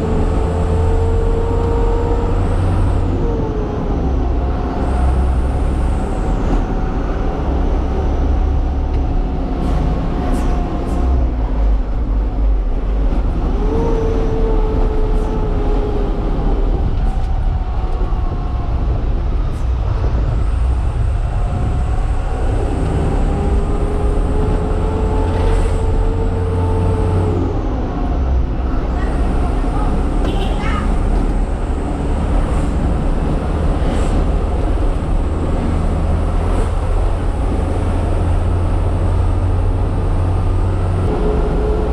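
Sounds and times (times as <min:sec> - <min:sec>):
truck engine droning: 0:00.0 - 0:41.9.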